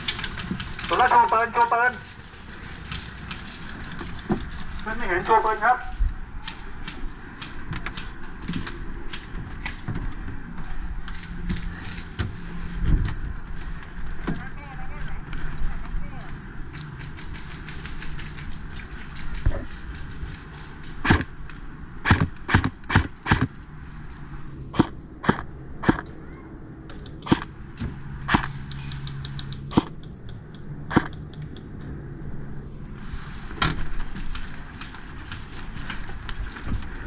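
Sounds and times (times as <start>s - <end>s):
airsoft gun single shots: 21.0s - 21.3s, 22.0s - 23.5s, 24.8s - 26.0s, 27.2s - 27.5s, 28.3s - 28.6s
distant rapid gunfire bursts: 21.0s - 21.3s, 22.0s - 23.5s.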